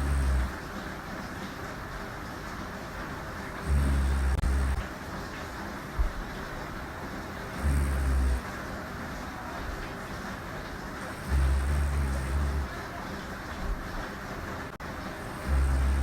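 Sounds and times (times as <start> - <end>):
woman snoring: 0.0 - 0.6, 3.6 - 4.9, 7.5 - 8.4, 11.0 - 12.7, 15.2 - 16.0
background hiss: 0.0 - 16.0.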